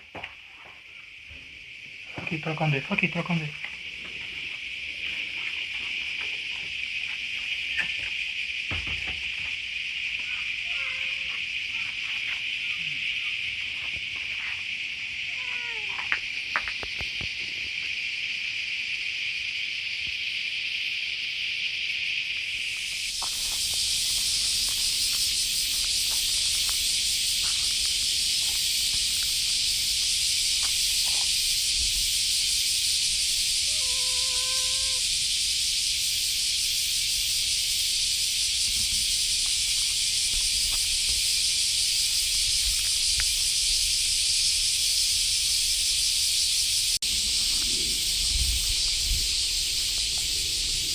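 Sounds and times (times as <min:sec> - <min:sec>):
insect chorus: 0:00.0 - 0:50.9
short pitched call: 0:33.6 - 0:35.0.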